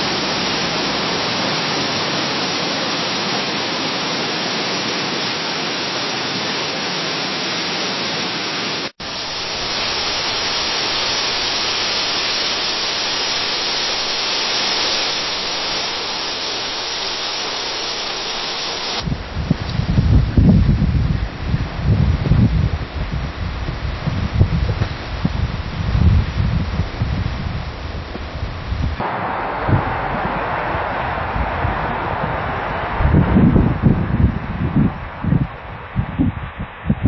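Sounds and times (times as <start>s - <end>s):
leaves rustling in wind: 0.0s - 37.0s
low wind rumble: 9.0s - 37.0s.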